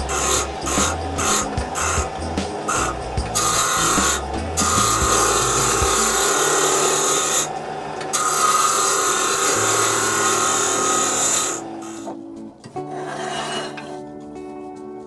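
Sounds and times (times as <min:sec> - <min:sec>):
abrasive tool scraping wood: 0:00.0 - 0:07.5, 0:12.8 - 0:14.1.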